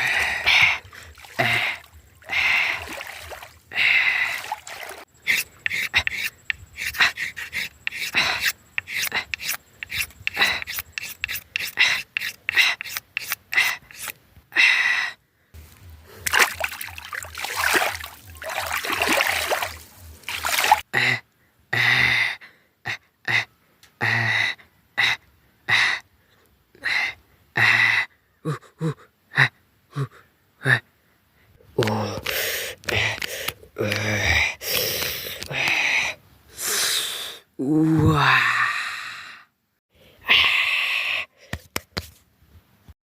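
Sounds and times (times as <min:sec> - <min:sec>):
person eating noisily: 0:05.2 - 0:14.1.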